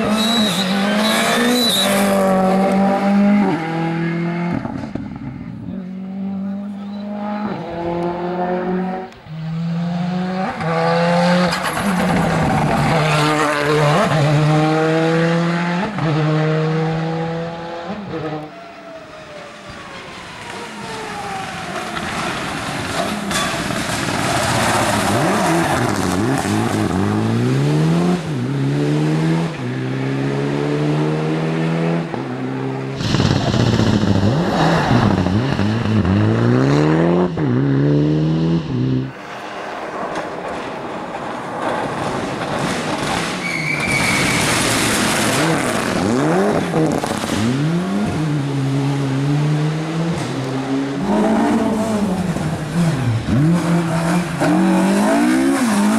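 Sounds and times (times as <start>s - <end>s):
rally car engines revving: 0.0s - 55.9s.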